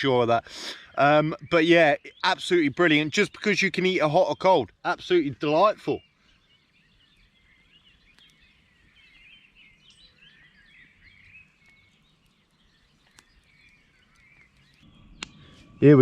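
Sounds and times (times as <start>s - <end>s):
small birds twittering: 0.0s - 16.0s
faint clicks: 8.0s - 8.5s, 11.0s - 15.4s.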